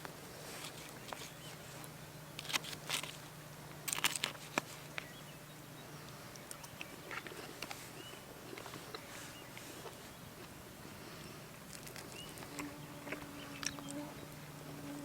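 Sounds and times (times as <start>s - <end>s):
faint low hum: 0.0s - 15.0s
food crunching while chewed: 6.4s - 10.6s, 11.6s - 15.0s.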